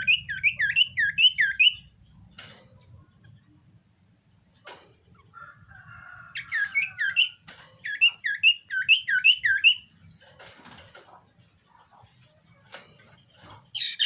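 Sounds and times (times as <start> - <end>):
bird singing whistled notes: 0.0 - 1.9, 6.4 - 9.9.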